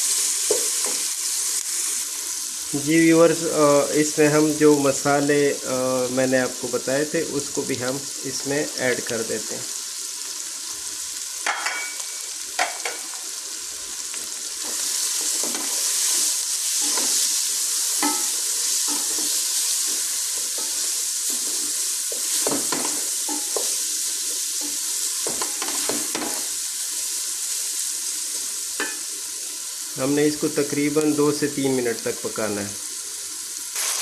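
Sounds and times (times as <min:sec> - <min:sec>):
vegetables sizzling in oil: 0:00.0 - 0:34.0
spoon scraping a pan: 0:14.6 - 0:23.8.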